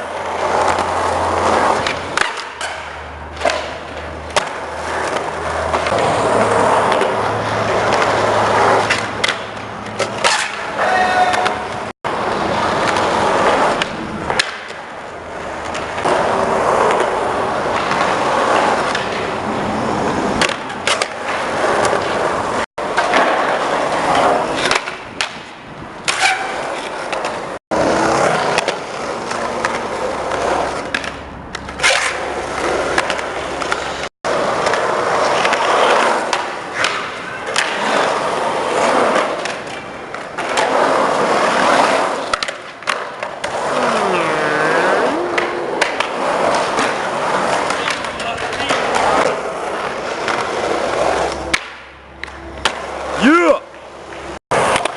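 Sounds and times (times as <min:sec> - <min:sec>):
high skateboard scrapes: 0:00.0 - 0:25.0, 0:26.1 - 0:53.3
skateboard clacking on ground: 0:00.0 - 0:44.2, 0:44.8 - 0:54.9
skateboard wheels rolling on concrete: 0:00.0 - 0:54.9.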